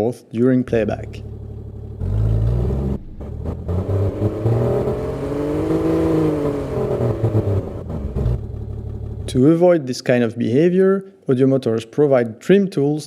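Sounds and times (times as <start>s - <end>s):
car engine revving: 0.7s - 9.4s.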